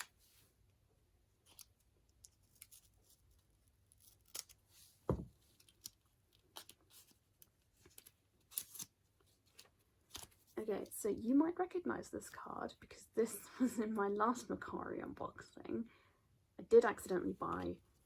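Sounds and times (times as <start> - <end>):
thump: 5.1 - 5.3.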